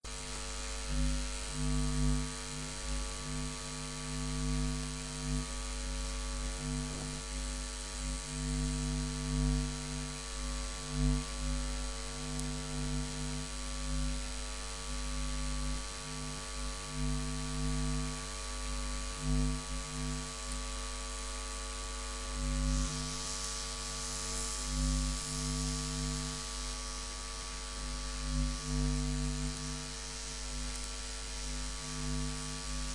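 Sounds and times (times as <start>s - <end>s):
mains hum and buzz: 0.0s - 32.9s
electrical hiss: 22.7s - 26.2s.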